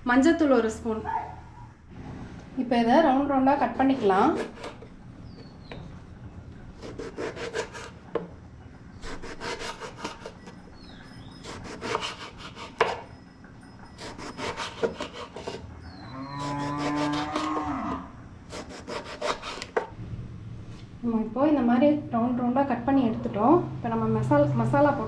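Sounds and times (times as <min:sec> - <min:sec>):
knife slicing on chopping board: 0:06.8 - 0:07.9, 0:18.5 - 0:19.9.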